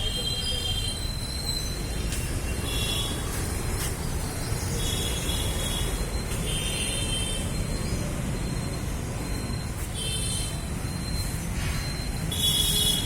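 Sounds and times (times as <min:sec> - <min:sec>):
city traffic rumble: 0:00.0 - 0:13.0.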